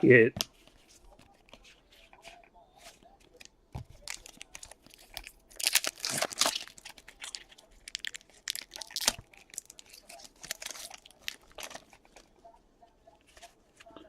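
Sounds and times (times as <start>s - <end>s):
foil wrapper crinkling and tearing: 3.3s - 12.3s.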